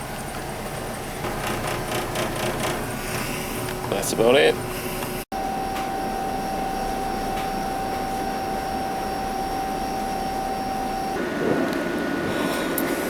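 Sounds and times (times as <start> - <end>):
ship machinery drone: 0.0 - 13.0
steady whine: 1.2 - 13.0.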